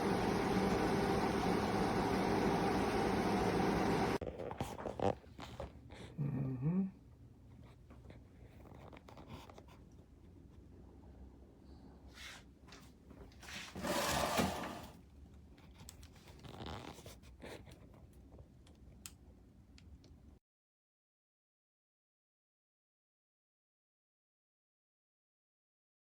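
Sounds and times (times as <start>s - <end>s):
air conditioner humming: 0.0s - 4.2s
scraping and rustling: 13.3s - 15.0s.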